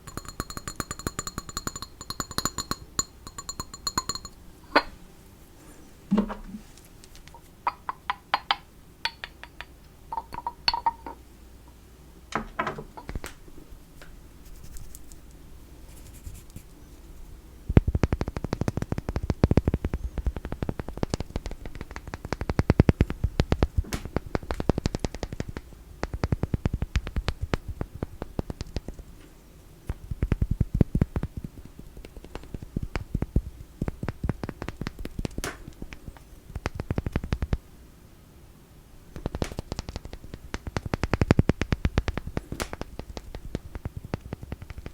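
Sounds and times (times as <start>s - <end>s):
small objects tapped by hand: 0.0s - 4.9s, 7.0s - 11.2s, 12.3s - 13.4s, 17.7s - 29.3s, 29.9s - 37.6s, 39.1s - 44.9s
fast tapping and scratching: 17.7s - 29.1s, 29.9s - 37.7s, 39.1s - 44.9s.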